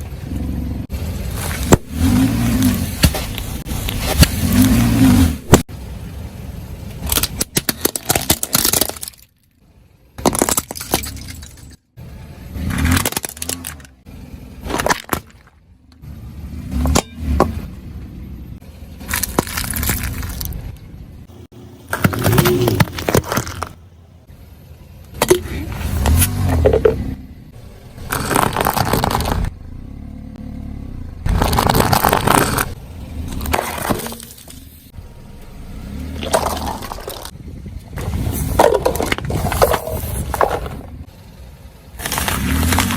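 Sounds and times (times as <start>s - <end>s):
tyres crushing brittle objects: 1.3s - 5.7s, 7.0s - 9.4s, 10.2s - 11.8s, 12.6s - 14.0s, 14.6s - 15.6s, 19.0s - 20.8s, 21.9s - 23.8s, 28.0s - 29.6s, 31.3s - 35.0s, 36.0s - 37.4s, 41.9s - 42.9s
low engine hum: 13.5s - 42.9s.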